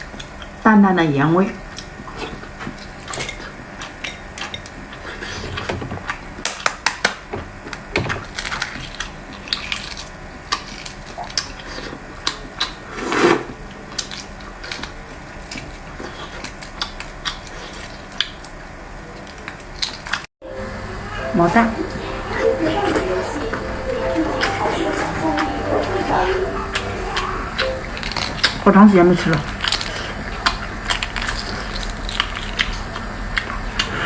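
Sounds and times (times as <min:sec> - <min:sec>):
chewing: 0:01.6 - 0:06.6, 0:07.7 - 0:12.9, 0:13.8 - 0:20.3, 0:24.3 - 0:34.0.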